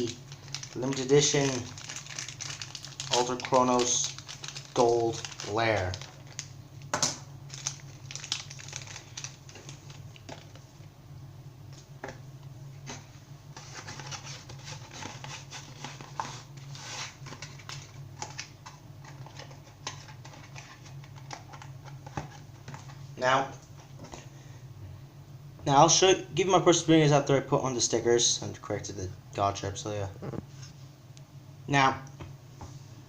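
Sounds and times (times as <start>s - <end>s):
packaging rustling: 0.0s - 6.5s, 7.5s - 10.6s
steady low hum: 0.0s - 33.0s.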